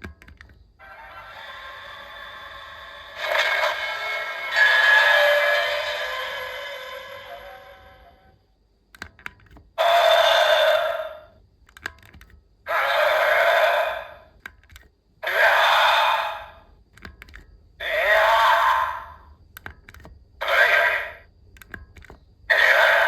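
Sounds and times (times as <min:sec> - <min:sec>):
toy electronic sound effects: 0:00.8 - 0:08.2, 0:09.8 - 0:11.3, 0:12.7 - 0:14.3, 0:15.2 - 0:16.6, 0:17.8 - 0:19.3, 0:20.4 - 0:21.2, 0:22.5 - 0:23.0.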